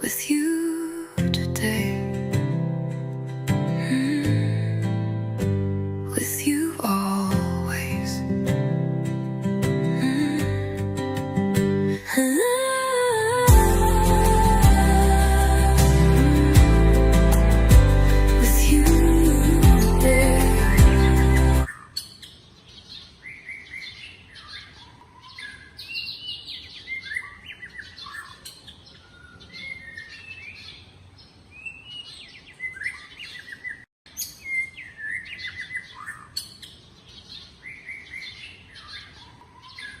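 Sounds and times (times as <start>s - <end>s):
birds chirping and calling: 16.9s - 40.0s.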